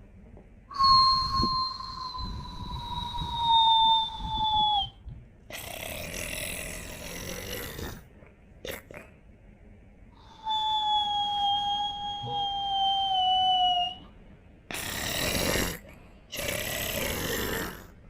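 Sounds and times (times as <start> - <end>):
low rumble: 0.1 - 5.5
whistling snore: 0.7 - 5.0, 10.2 - 14.1, 14.8 - 15.8, 16.4 - 17.8.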